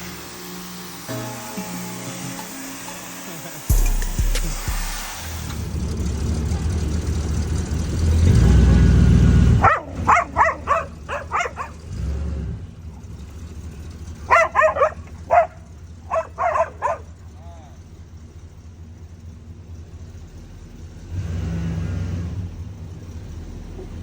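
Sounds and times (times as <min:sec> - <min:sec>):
dog barking: 0:09.5 - 0:11.9, 0:14.2 - 0:17.2.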